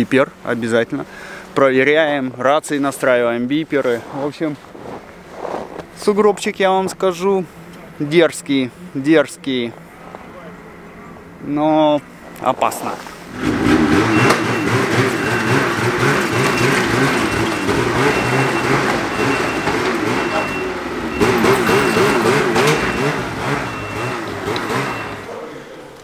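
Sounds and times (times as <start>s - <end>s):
snowmobile engine running: 13.1s - 25.3s.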